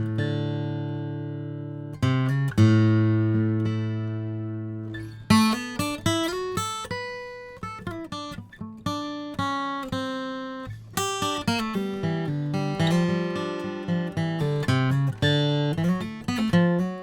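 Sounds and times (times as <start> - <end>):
acoustic guitar picked notes: 0.0 - 17.0.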